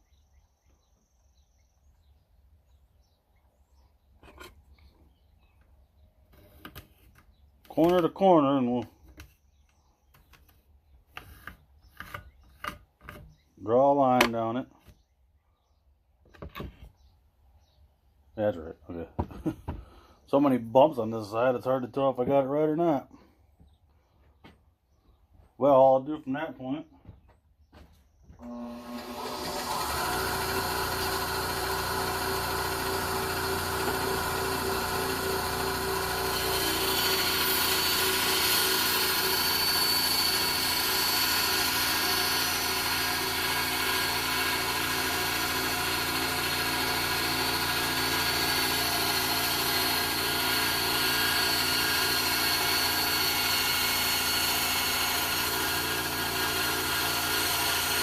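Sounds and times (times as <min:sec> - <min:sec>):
electric saw motor humming: 0:28.4 - 0:58.0.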